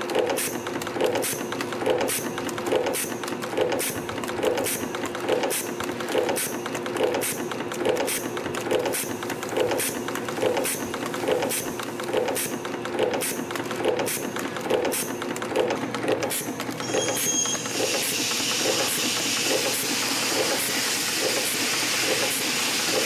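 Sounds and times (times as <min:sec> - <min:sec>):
spring machine humming: 0:00.0 - 0:23.0.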